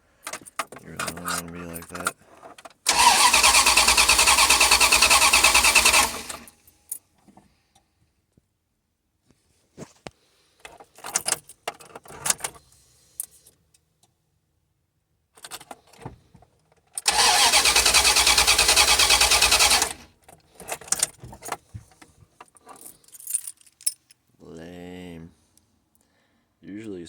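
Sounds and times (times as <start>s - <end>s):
starter cranking engine: 2.9s - 6.5s, 17.0s - 20.1s.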